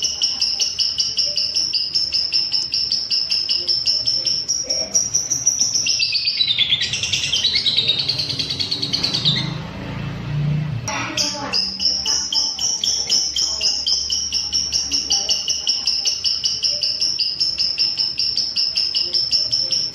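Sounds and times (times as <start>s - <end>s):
lovebird chattering trill: 0.0s - 9.6s, 10.9s - 19.9s.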